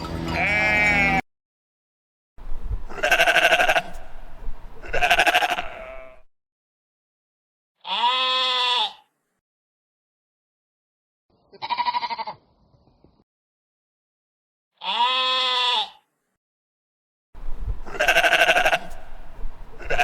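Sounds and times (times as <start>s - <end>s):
farm animal bleating: 0.1s - 1.2s, 2.9s - 6.3s, 7.8s - 9.1s, 11.4s - 12.5s, 14.8s - 16.0s, 17.8s - 20.0s.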